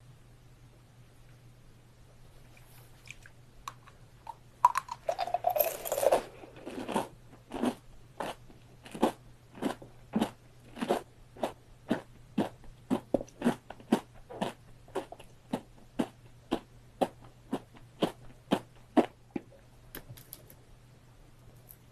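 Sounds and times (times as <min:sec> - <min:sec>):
crisp chewing crunches: 0:04.8 - 0:19.2.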